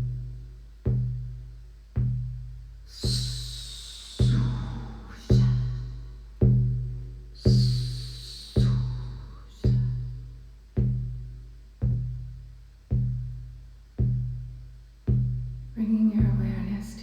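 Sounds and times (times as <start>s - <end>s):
hand drum beaten: 0.0s - 17.0s.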